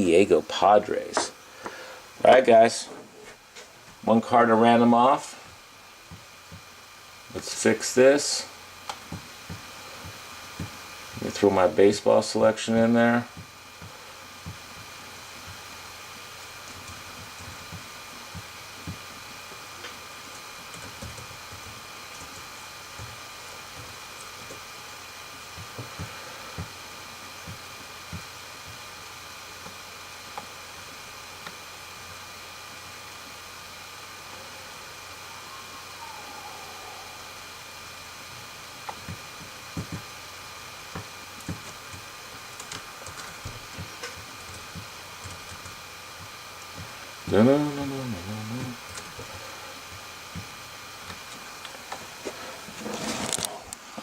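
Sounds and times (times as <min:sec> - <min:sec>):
electrical hum: 0:00.0 - 0:54.0
faint steady tones: 0:03.5 - 0:51.7
background hiss: 0:32.4 - 0:45.6.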